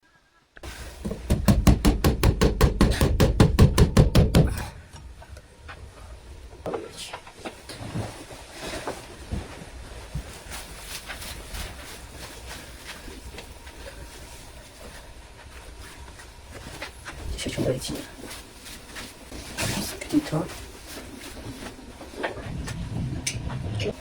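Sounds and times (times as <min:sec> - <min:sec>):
rapid knocks: 0:01.0 - 0:04.6.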